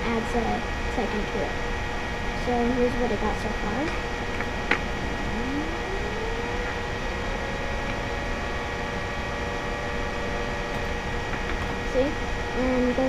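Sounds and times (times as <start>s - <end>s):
synthesized siren wail: 4.9s - 10.7s.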